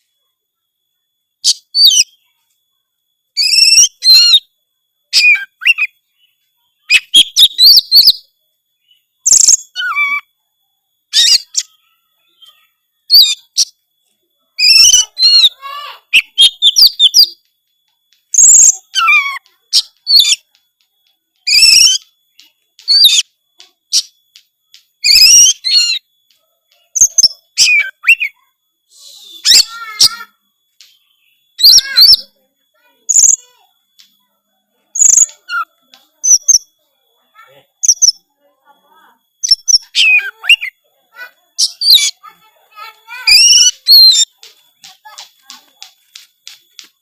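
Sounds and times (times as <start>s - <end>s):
songbird whistled phrases: 1.4s - 2.2s, 3.4s - 4.5s, 5.1s - 8.2s, 8.8s - 10.3s, 11.1s - 13.8s, 14.6s - 17.4s, 18.3s - 20.4s, 21.4s - 22.1s, 22.8s - 23.3s, 25.0s - 26.1s, 26.9s - 30.4s, 31.0s - 32.4s, 33.1s - 33.6s, 34.9s - 36.7s, 37.8s - 38.2s, 39.4s - 40.8s, 41.6s - 44.3s.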